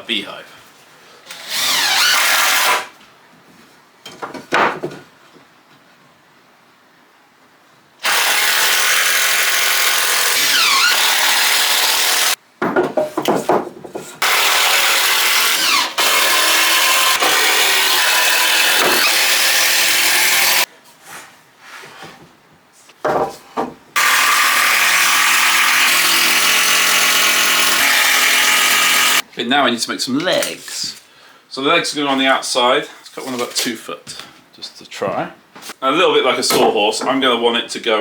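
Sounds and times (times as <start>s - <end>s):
power drill driving screws: 1.3s - 2.9s, 8.0s - 12.4s, 14.2s - 20.7s, 24.0s - 29.2s.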